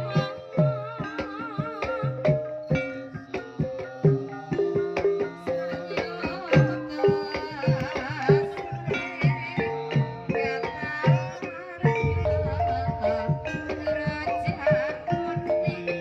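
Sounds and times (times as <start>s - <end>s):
hand drum strokes: 11.8s - 16.0s
wavering melodic line: 12.0s - 15.4s
metallophone melody: 12.0s - 16.0s.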